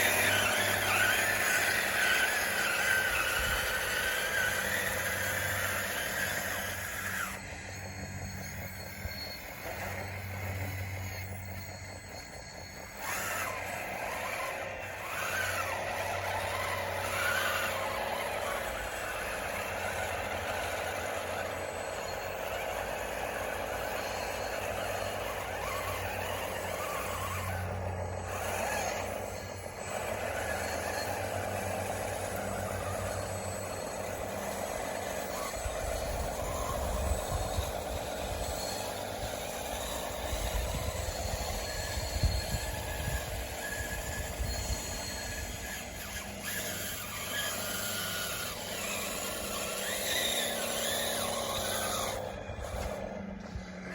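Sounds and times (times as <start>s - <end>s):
toy bulldozer motor whining: 0.0s - 53.9s.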